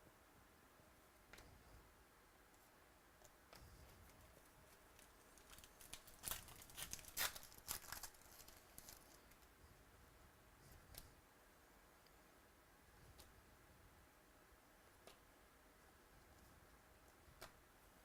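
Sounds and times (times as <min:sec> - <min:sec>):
wrapper tearing and crinkling: 0:04.7 - 0:09.4.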